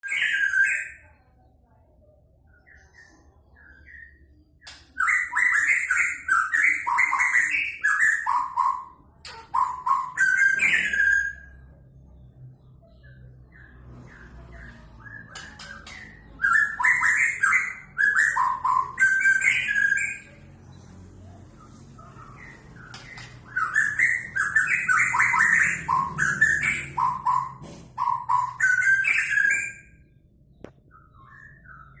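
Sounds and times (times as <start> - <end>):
bird singing whistled phrases: 15.1 - 20.3, 23.2 - 30.1.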